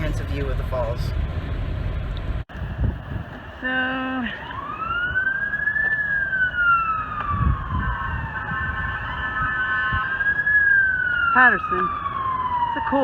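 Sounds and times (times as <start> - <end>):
low traffic rumble: 0.0 - 13.0
emergency siren wailing: 3.6 - 13.0.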